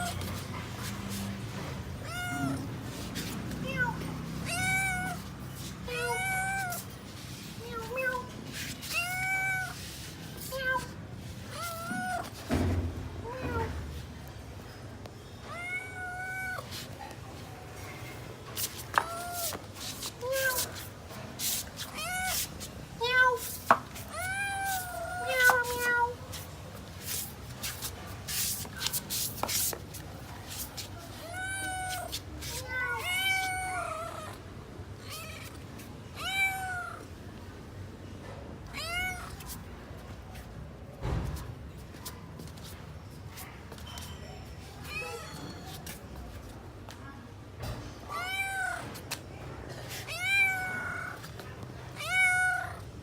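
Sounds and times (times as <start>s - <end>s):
kitten meowing: 2.0s - 2.7s.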